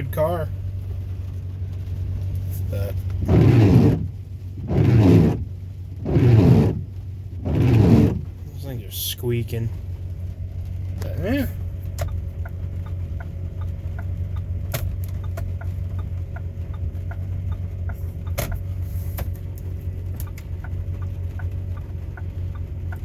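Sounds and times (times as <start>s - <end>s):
car engine idling: 0.0s - 23.0s
light regular ticking: 7.6s - 23.0s.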